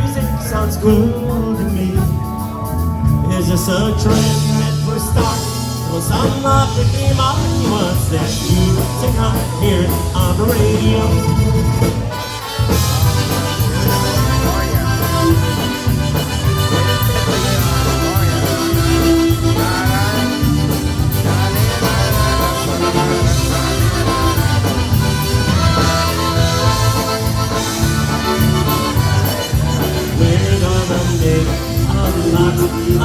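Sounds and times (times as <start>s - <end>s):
oom-pah bass beat: 0.0s - 33.0s
polka band playing: 0.0s - 33.0s
squeezebox melody: 9.0s - 33.0s.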